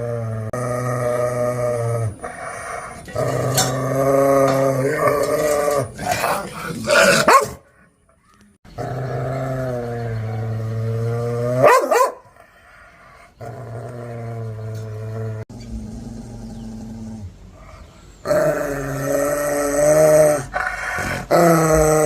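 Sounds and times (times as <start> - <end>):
dog growling: 0.0 - 7.5, 8.7 - 11.8, 12.4 - 22.0
dog barking: 7.2 - 7.6, 11.6 - 12.3.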